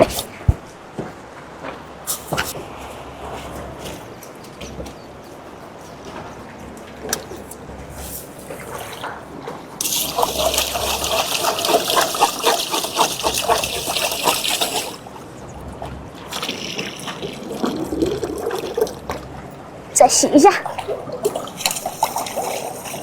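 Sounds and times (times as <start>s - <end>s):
water pouring into pot: 9.8s - 15.2s, 16.1s - 19.1s, 20.6s - 23.0s.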